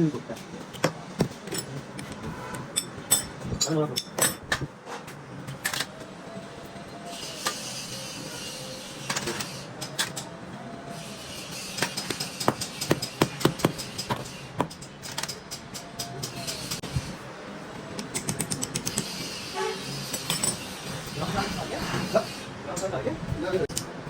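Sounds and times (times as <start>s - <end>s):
metal tools clinking: 1.4s - 4.6s, 20.1s - 21.2s.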